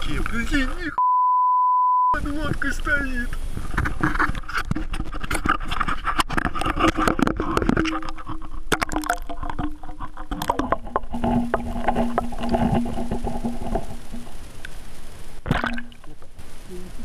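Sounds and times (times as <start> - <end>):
steady low hum: 2.2 - 17.0.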